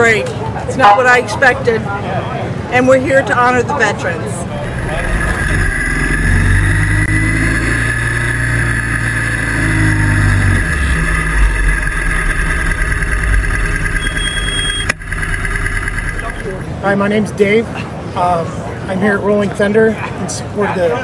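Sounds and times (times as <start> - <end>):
low engine drone: 4.5 - 16.8
motorcycle engines passing: 4.5 - 16.8.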